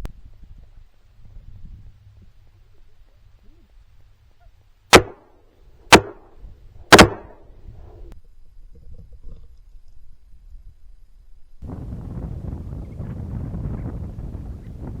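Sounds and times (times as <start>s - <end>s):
shotgun shots: 4.9s - 5.3s, 5.9s - 6.3s, 6.9s - 7.4s.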